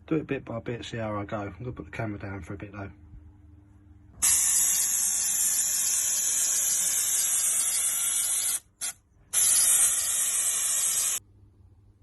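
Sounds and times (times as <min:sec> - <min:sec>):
aerosol can spraying hiss: 0:04.2 - 0:11.2.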